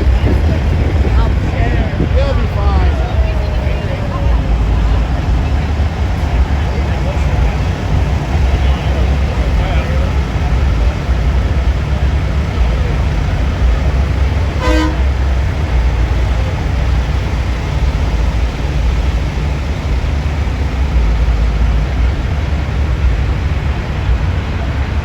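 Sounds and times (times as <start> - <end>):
steady low rumble: 0.0 - 25.0
vehicle horn toot: 14.5 - 15.4.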